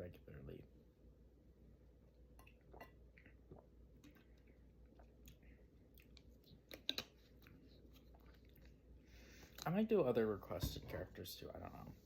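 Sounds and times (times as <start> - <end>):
low room hum: 0.0 - 12.0
faint chewing and mouth clicks: 2.4 - 9.8.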